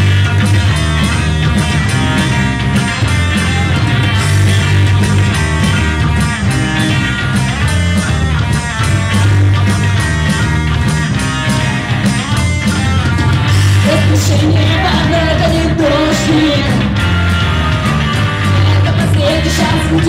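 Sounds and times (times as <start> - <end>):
rock music with guitars: 0.0 - 20.0
person singing: 13.8 - 17.1, 18.1 - 20.0.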